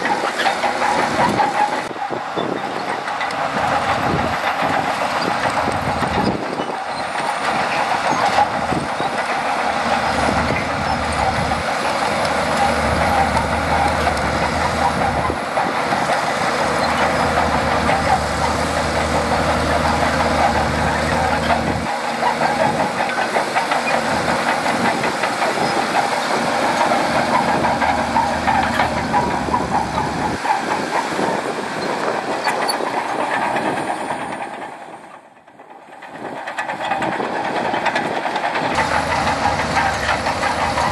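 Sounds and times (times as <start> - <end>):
bulldozer diesel engine under load: 0.0 - 40.9
steel tracks clattering: 0.0 - 40.9.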